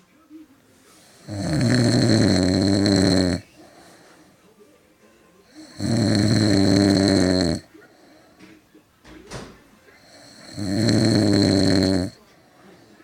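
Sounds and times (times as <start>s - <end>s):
person snoring: 1.1s - 3.4s, 5.5s - 7.7s, 10.0s - 12.2s.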